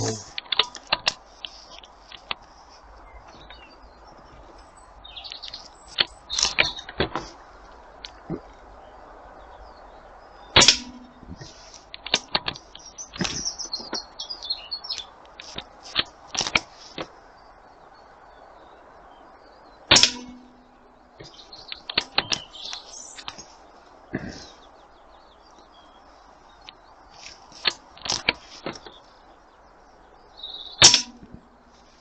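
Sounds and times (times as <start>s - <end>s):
birds chirping: 0.0s - 32.0s
air rifle shots: 10.6s - 11.1s, 19.9s - 20.5s, 30.8s - 31.4s
small clicks and knocks: 10.6s - 14.1s, 21.2s - 23.4s.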